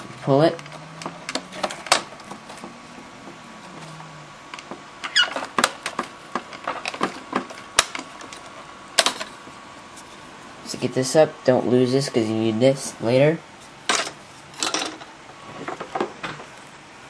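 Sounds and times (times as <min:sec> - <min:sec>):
plastic squeak: 0:05.0 - 0:05.6
plastic clips clicking and snapping: 0:05.4 - 0:08.4.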